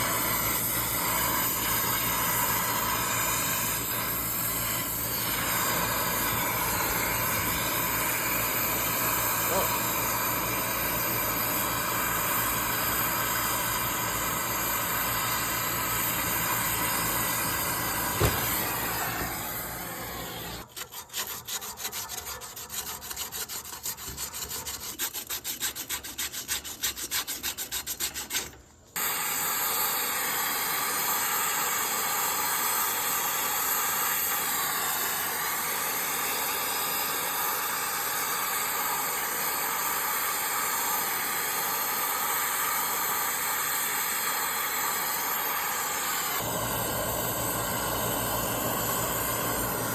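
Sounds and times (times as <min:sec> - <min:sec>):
rapid rasping strokes: 0:20.5 - 0:28.7.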